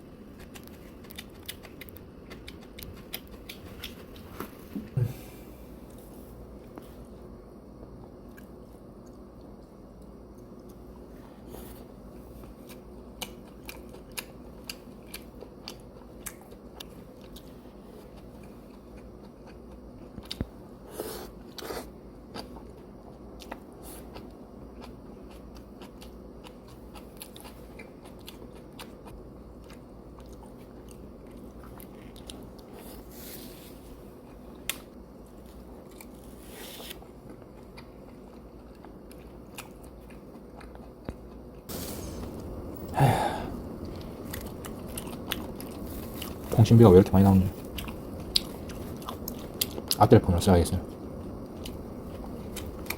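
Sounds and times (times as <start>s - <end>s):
low room hum: 0.0s - 52.9s
person chewing and biting: 0.3s - 4.7s, 12.2s - 33.1s, 34.1s - 46.5s, 47.6s - 50.0s.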